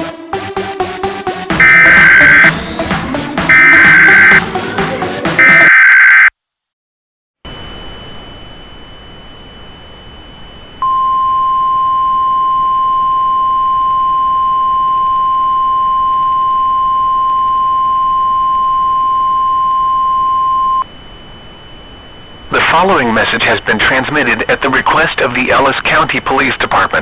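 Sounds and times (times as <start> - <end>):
steady alert tone: 1.5 - 6.3.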